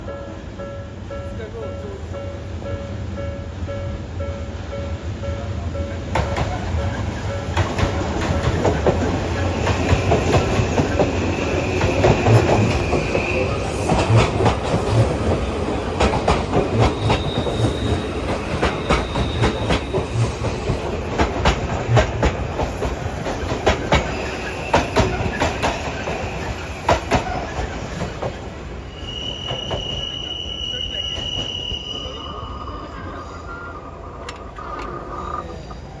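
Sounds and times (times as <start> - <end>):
train wheels clattering: 5.8 - 31.8
high wheel squeals: 6.5 - 21.3, 22.8 - 36.0.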